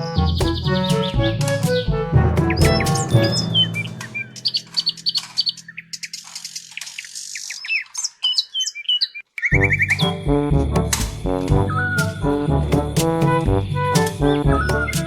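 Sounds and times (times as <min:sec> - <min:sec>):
music track: 0:00.0 - 0:05.7, 0:09.6 - 0:15.0
birds chirping: 0:00.1 - 0:10.2.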